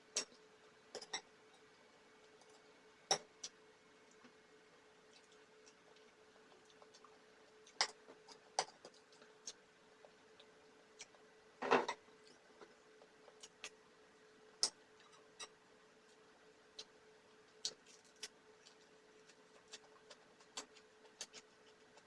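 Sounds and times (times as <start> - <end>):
faint steady hum: 0.0 - 22.0
chewing and utensil clicks: 17.6 - 22.0.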